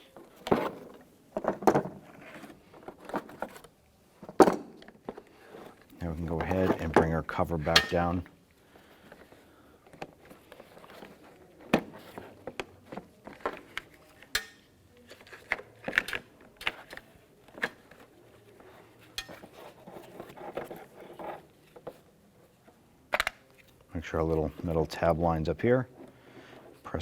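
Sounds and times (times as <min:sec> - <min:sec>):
plastic and metal parts clicking: 0:09.1 - 0:18.1, 0:23.1 - 0:23.8.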